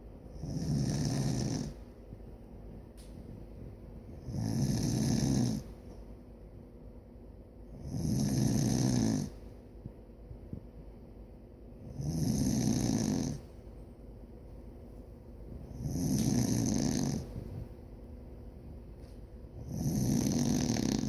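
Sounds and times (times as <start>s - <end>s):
person snoring: 0.4s - 1.7s, 4.3s - 5.6s, 7.8s - 9.3s, 12.0s - 13.4s, 15.8s - 17.2s, 19.7s - 21.0s.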